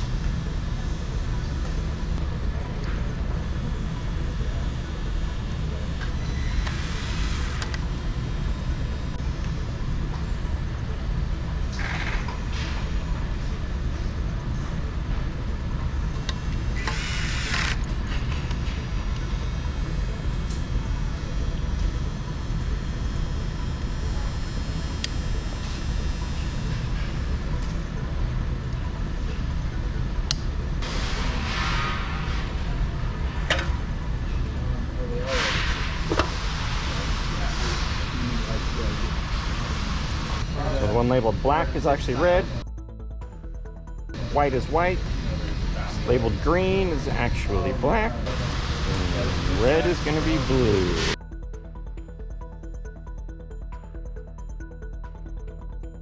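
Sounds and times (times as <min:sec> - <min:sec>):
low background rumble: 0:00.0 - 0:16.9.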